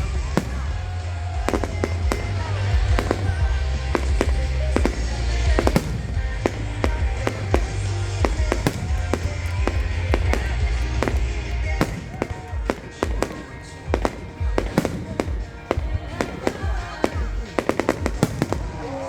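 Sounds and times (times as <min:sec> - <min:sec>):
deep rumble: 0:00.0 - 0:12.3
fireworks bangs and crackles: 0:00.0 - 0:19.0
music playing: 0:00.0 - 0:19.0.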